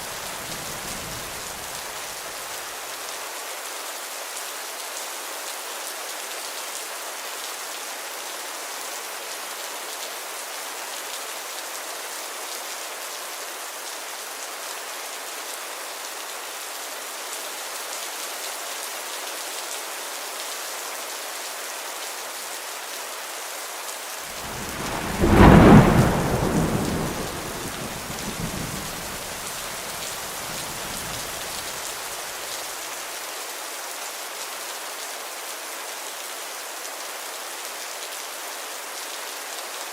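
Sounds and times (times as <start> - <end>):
heavy rain: 0.0 - 39.9
thunderclap rumbling: 24.4 - 31.7.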